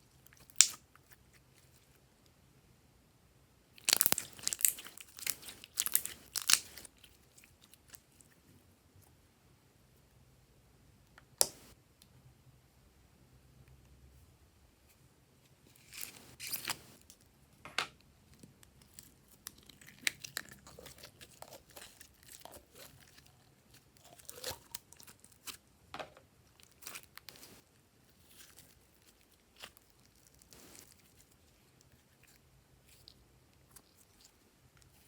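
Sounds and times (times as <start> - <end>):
slime crackling and popping: 0.3 - 0.8, 3.8 - 8.0, 18.7 - 25.6.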